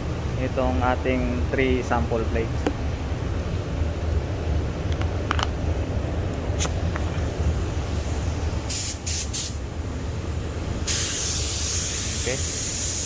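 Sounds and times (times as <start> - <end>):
steady low rumble: 0.0 - 8.8
spray gun hissing bursts: 7.7 - 9.7, 10.3 - 13.0.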